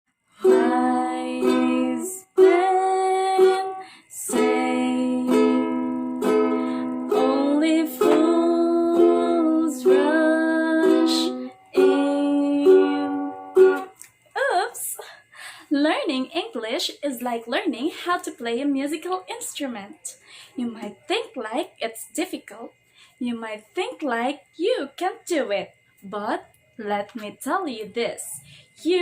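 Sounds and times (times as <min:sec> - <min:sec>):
ukulele music: 0:00.4 - 0:14.0.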